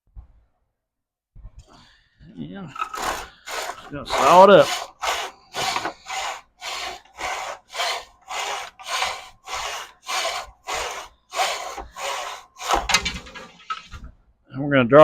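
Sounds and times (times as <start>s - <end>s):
hand saw cutting wood: 2.8s - 13.9s.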